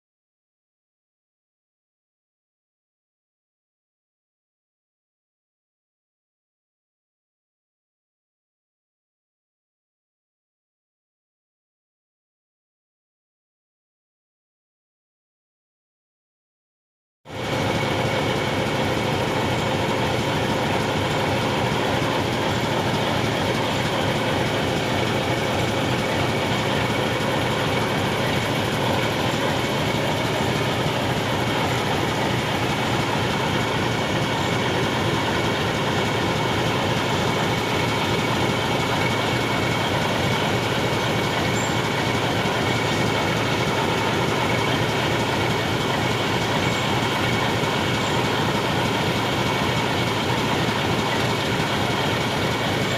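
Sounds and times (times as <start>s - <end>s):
diesel locomotive engine idling: 17.3s - 52.9s.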